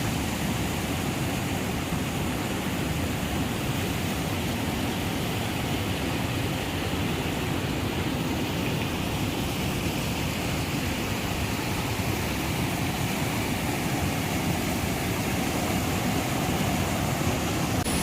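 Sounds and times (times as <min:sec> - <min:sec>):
waterfall and stream rushing: 0:00.0 - 0:18.0.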